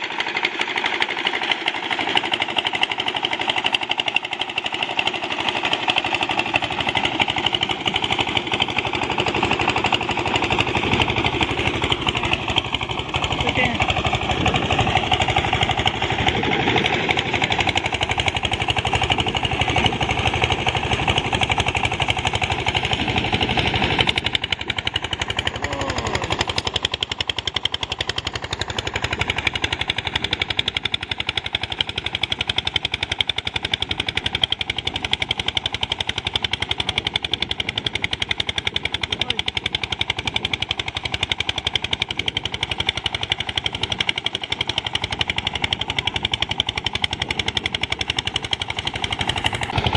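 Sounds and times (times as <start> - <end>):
threshing machine engine running: 0.0 - 49.9.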